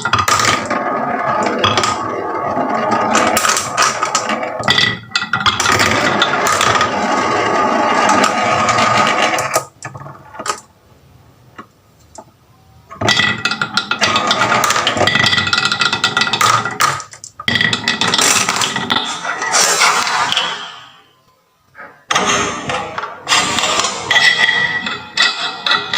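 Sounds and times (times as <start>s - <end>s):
marbles rattling down wooden run: 13.1s - 18.9s.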